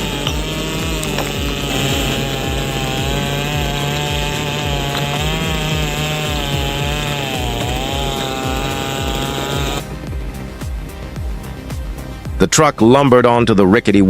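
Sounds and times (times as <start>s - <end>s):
chainsaw cutting wood: 0.0s - 10.5s.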